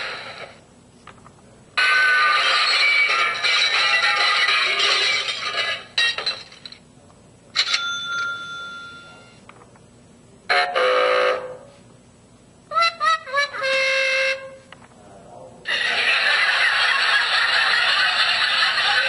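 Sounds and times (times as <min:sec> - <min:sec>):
bell-like ring: 0:07.6 - 0:09.4.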